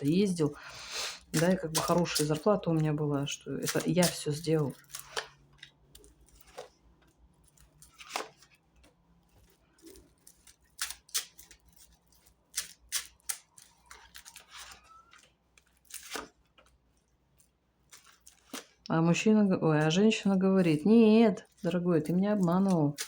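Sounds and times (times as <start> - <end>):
cards clicking and snapping: 1.2 - 2.9, 3.6 - 16.8, 17.9 - 18.9.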